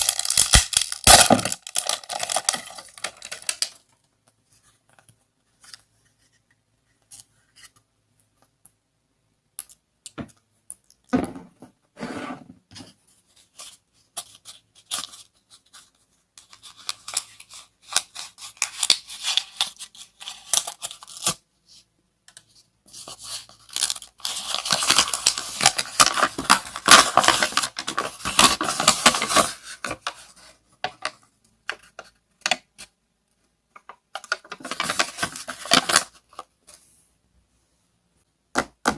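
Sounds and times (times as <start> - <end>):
packaging crackling and rustling: 0.0 - 3.8, 23.6 - 30.3, 34.1 - 36.4.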